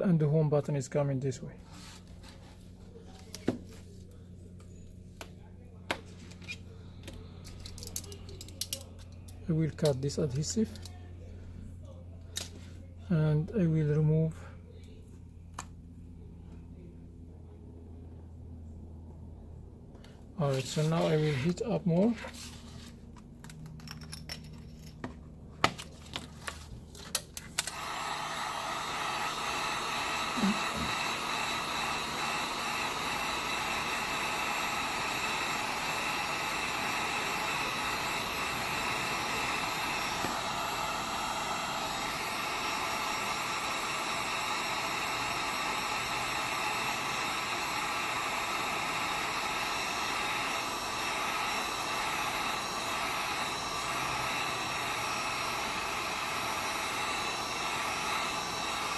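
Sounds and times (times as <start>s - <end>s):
heat gun blowing: 20.4s - 22.7s, 27.4s - 58.9s.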